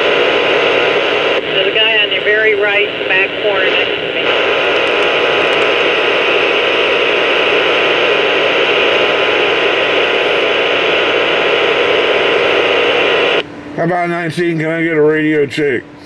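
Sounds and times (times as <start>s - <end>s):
radio static: 0.0s - 13.4s.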